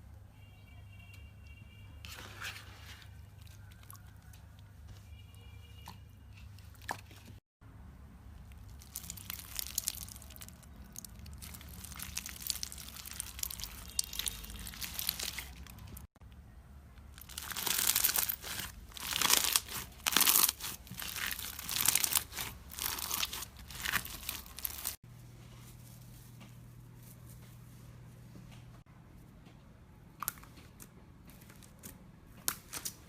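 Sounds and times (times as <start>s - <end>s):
slime crackling and crunching: 8.4s - 16.2s, 17.0s - 25.0s.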